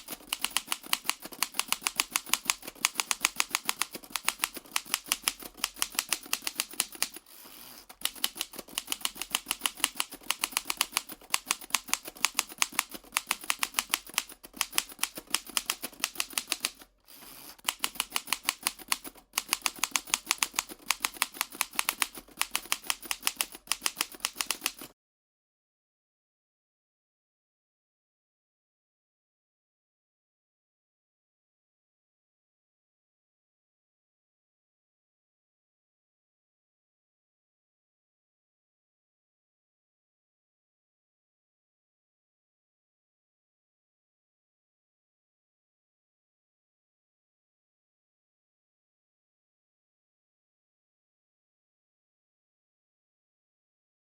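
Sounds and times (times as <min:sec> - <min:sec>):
typewriter key strikes: 0:00.0 - 0:24.9.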